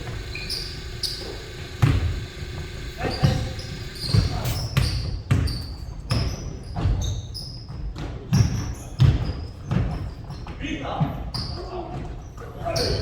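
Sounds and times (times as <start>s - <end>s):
basketballs bouncing on gym floor: 0.0s - 13.0s
shoes squeaking on court: 0.0s - 13.0s.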